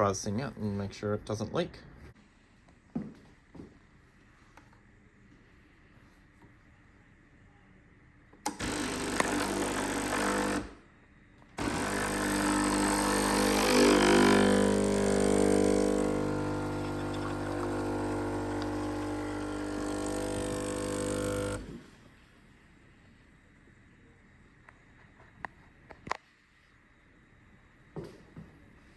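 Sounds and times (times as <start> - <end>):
espresso machine pump buzzing: 8.5 - 10.8, 11.6 - 22.0.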